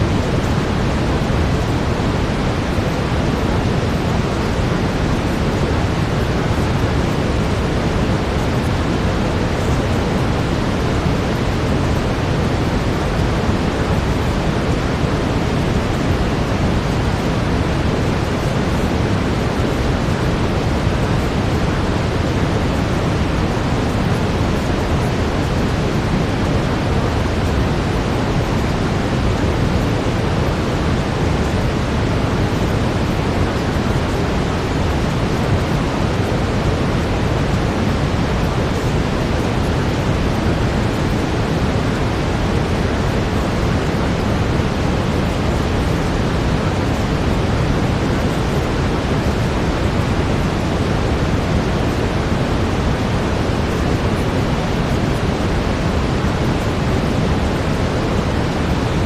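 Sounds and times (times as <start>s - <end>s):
deep brown noise hiss: 0.0s - 59.0s.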